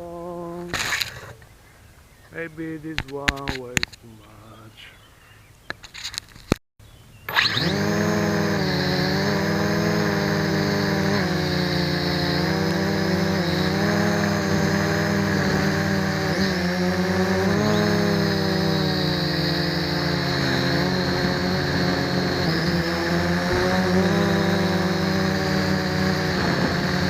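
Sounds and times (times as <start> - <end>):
quadcopter motors buzzing whine: 7.0 - 27.0.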